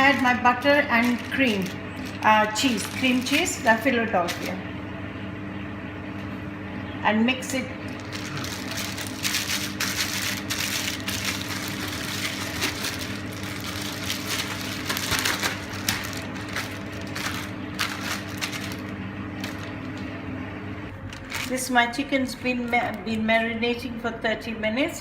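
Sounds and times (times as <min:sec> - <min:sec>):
plastic bag crinkling: 0:00.0 - 0:04.5, 0:07.8 - 0:20.0, 0:21.0 - 0:21.8
low appliance hum: 0:00.0 - 0:25.0.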